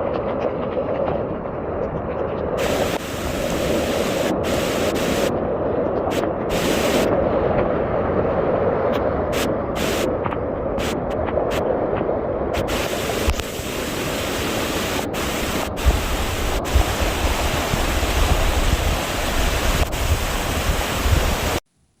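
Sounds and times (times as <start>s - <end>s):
high hiss: 2.6s - 5.3s, 6.1s - 7.1s, 9.4s - 10.1s, 10.8s - 11.1s, 12.6s - 22.0s
heavy rain: 2.6s - 5.4s, 6.1s - 7.5s, 9.3s - 10.2s, 10.8s - 11.6s, 12.5s - 21.6s
water rushing: 2.6s - 21.6s.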